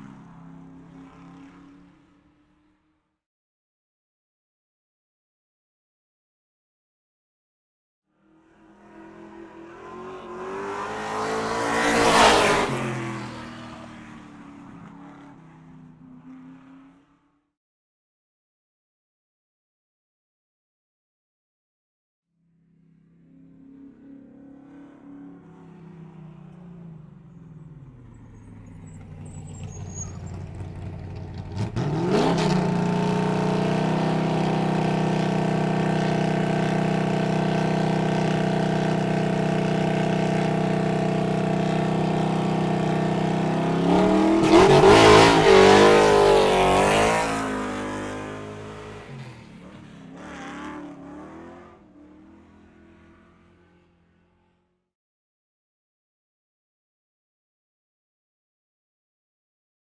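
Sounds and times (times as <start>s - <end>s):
vehicle engine revving: 8.9s - 14.1s, 23.7s - 53.7s.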